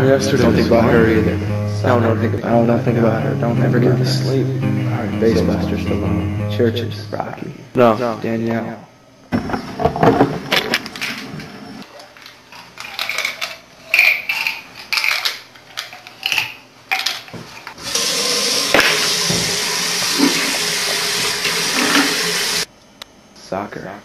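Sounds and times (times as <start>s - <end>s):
rushing water: 17.9s - 22.7s.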